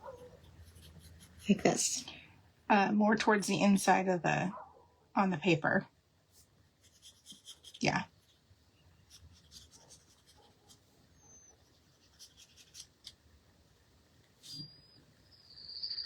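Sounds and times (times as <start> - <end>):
pencil drawing strokes on paper: 0.0 - 1.9, 6.4 - 13.2.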